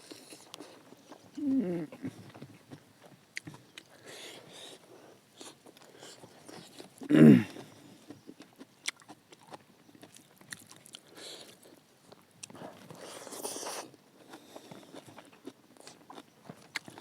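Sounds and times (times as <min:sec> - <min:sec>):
person chewing and biting: 0:00.0 - 0:01.2, 0:08.1 - 0:17.0.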